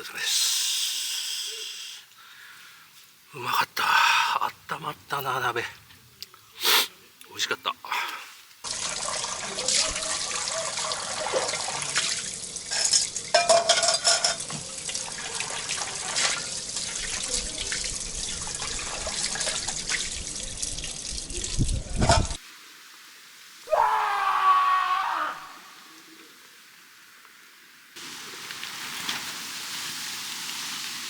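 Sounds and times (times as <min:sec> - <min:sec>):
tap water running into sink: 0:08.7 - 0:17.8
pot knocks and clinks: 0:12.7 - 0:14.6.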